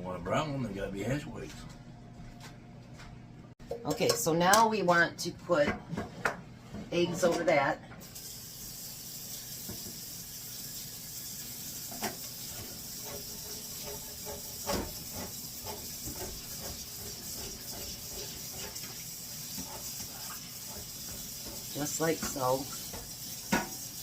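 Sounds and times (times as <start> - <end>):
utensil scraping cookware: 12.0 - 24.0.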